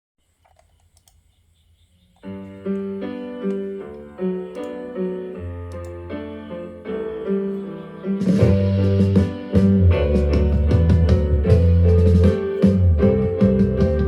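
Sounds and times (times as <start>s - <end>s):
faint clicks: 0.4s - 1.3s, 5.7s - 6.0s
pop piano through speaker: 2.2s - 14.0s.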